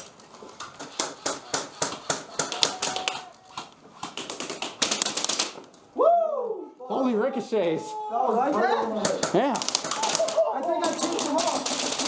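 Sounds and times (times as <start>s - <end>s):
airsoft rifle shots: 0.8s - 5.6s, 9.0s - 12.0s.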